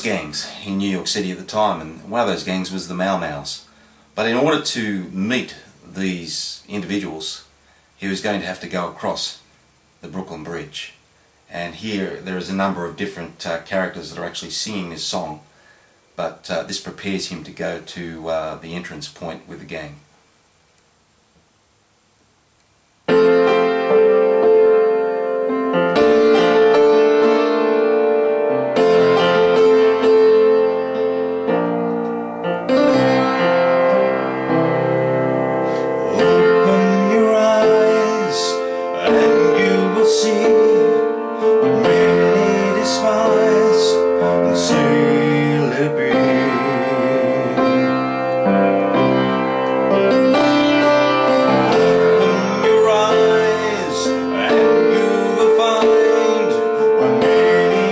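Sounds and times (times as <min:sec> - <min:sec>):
piano accompaniment: 0:23.1 - 0:57.9
several voices singing: 0:36.0 - 0:48.0, 0:51.7 - 0:57.9.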